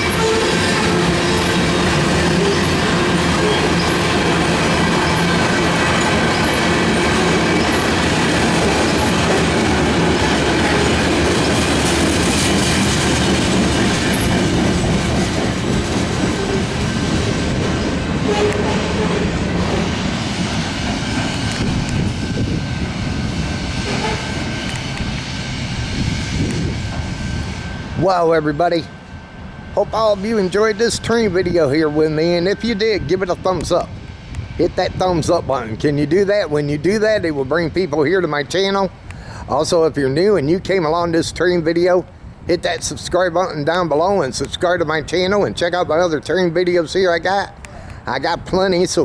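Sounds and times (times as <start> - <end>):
train wheels clattering on track: 0.0 - 28.0.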